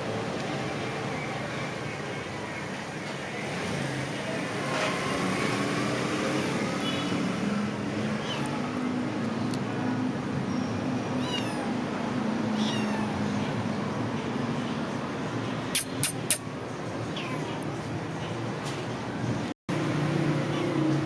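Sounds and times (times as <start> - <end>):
cat meowing: 11.2 - 11.8, 12.6 - 13.4, 17.1 - 17.6.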